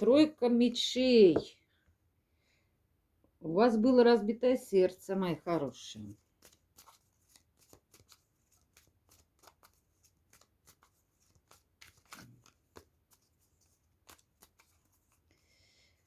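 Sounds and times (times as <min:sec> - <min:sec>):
cards being shuffled: 0:06.1 - 0:15.3.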